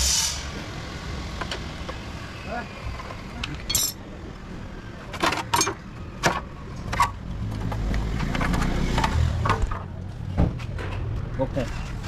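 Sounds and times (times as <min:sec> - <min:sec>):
tools and metal parts knocking: 0:03.7 - 0:04.0.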